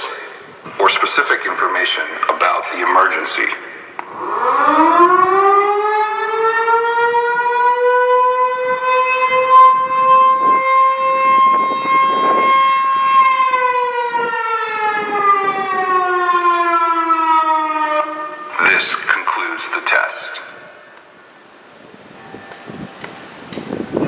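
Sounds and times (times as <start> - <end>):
electronic siren wail: 4.0 - 19.0.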